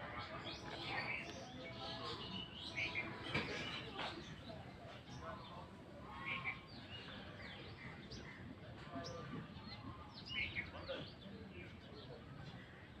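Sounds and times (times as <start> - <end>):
birds chirping: 0.0 - 8.4.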